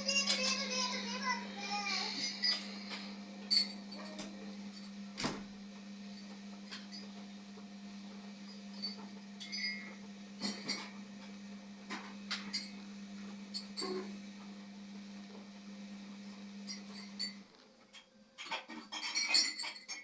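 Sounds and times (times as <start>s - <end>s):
steady low hum: 0.0s - 17.6s
household objects clicking and knocking: 17.0s - 20.0s.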